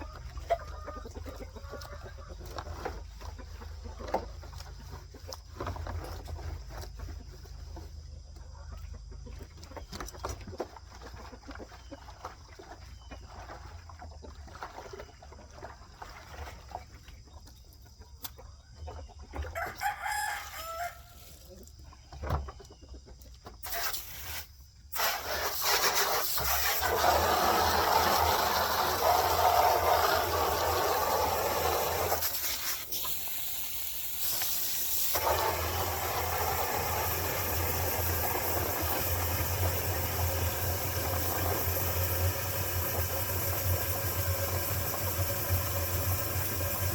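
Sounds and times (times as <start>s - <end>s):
chickens: 0.0s - 23.6s
rooster crowing: 19.5s - 21.2s.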